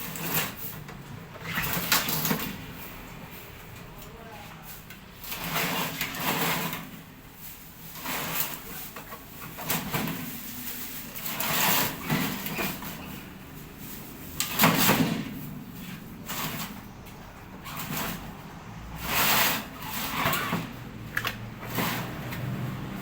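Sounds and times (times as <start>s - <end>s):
scraping and clattering handling noises: 0.0s - 23.0s.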